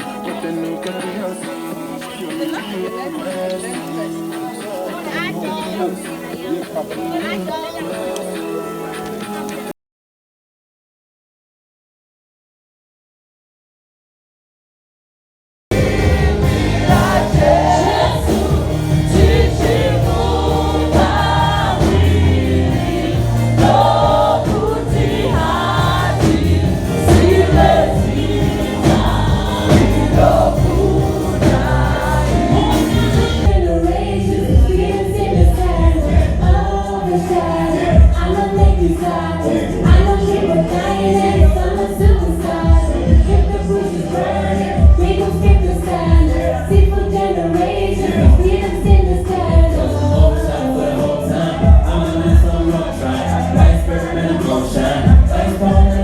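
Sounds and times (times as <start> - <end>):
gospel choir singing: 0.0 - 9.7, 15.7 - 56.0
low beat: 15.7 - 44.0.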